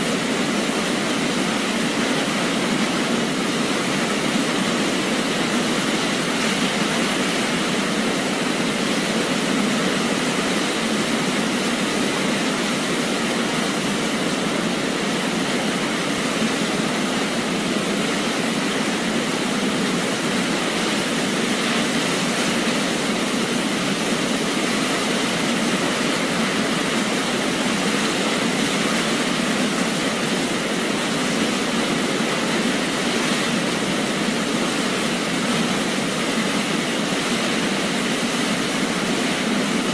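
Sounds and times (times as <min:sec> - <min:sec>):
waterfall rushing: 0:00.0 - 0:39.9.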